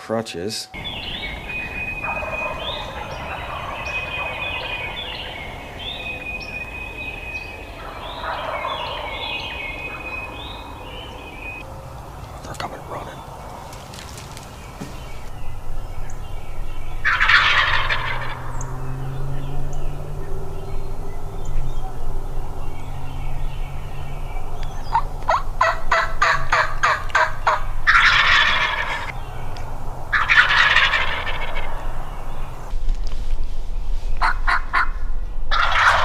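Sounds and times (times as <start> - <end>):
turkey clucking: 0.8 - 15.3, 17.0 - 18.6, 24.7 - 29.2, 30.1 - 32.0, 34.2 - 34.9, 35.5 - 36.0
turkey gobbling: 0.8 - 15.3, 17.0 - 18.6, 24.9 - 29.1, 30.1 - 32.0, 34.2 - 36.0.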